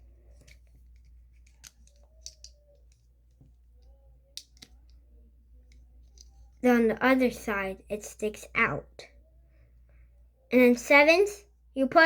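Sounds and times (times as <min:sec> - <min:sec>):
plastic bricks clicking: 0:01.4 - 0:03.0.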